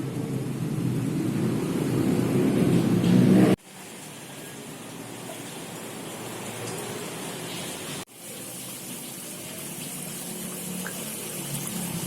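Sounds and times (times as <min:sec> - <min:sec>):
running water rushing: 0:03.6 - 0:12.0.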